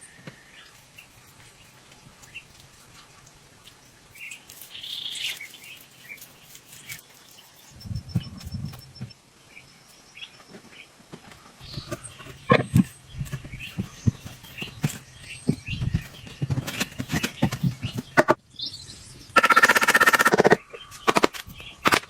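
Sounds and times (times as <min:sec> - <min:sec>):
faint bird chirps: 0:00.0 - 0:21.8
rustling: 0:00.2 - 0:09.2, 0:09.9 - 0:18.4
rapid even rattle: 0:00.6 - 0:08.8
knocks and clicks: 0:07.8 - 0:09.2, 0:11.3 - 0:18.4
low thuds: 0:07.8 - 0:09.2.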